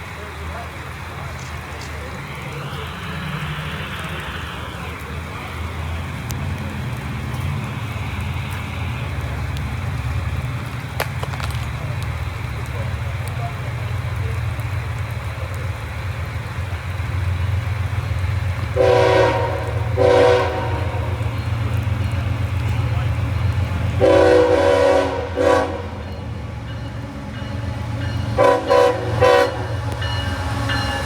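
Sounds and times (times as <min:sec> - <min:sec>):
diesel locomotive engine rumble: 0:00.0 - 0:31.0
locomotive air horn blasts: 0:18.8 - 0:21.4, 0:23.9 - 0:26.4, 0:27.1 - 0:31.0.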